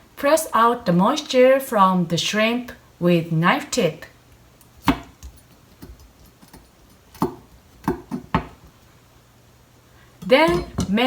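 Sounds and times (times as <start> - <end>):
knife tapping on cutting board: 7.2 - 8.6.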